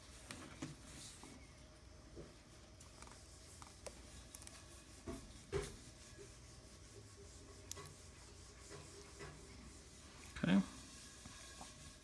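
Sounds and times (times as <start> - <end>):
hand tool scraping and tapping: 7.6 - 9.7.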